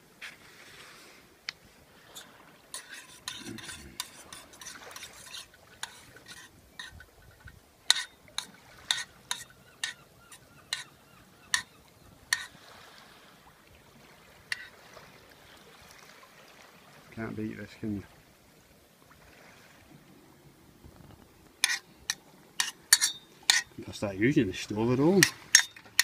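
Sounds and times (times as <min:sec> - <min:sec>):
spoon scraping metal pot: 0:02.2 - 0:12.6, 0:14.5 - 0:14.7, 0:21.6 - 0:23.9, 0:25.1 - 0:26.0
spoon clinking against pot: 0:02.8 - 0:10.9, 0:22.6 - 0:23.7, 0:25.2 - 0:26.0.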